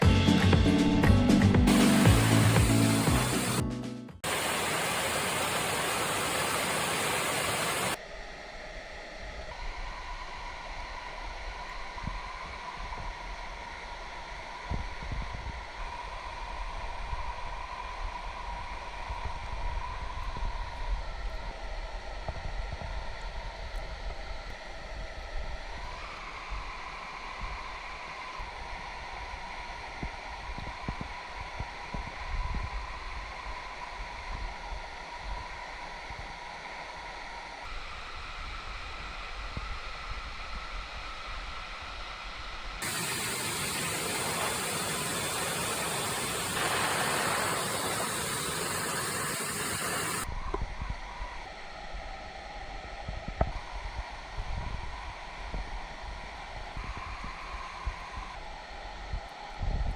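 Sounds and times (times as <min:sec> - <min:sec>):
mountain stream rushing: 0:01.7 - 0:03.6, 0:04.2 - 0:08.0, 0:42.8 - 0:50.3
white water hiss: 0:01.7 - 0:03.6, 0:04.2 - 0:08.0, 0:35.0 - 0:51.4.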